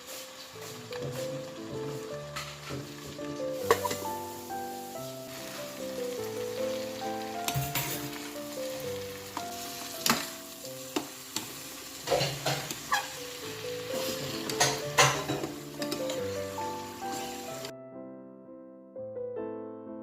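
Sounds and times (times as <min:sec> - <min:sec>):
food sizzling in a pan: 0:00.0 - 0:17.7
background music: 0:00.0 - 0:20.0
spatula scraping a pan: 0:07.4 - 0:10.3, 0:11.0 - 0:17.7.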